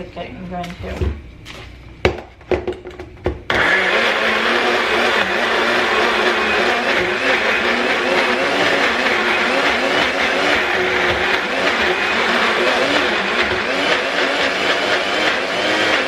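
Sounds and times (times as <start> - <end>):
blender running: 3.5 - 16.0.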